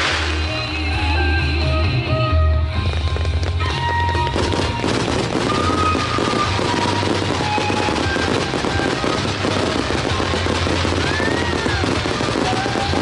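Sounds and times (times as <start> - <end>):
fireworks bursting and crackling: 0.0 - 1.1, 2.8 - 13.0.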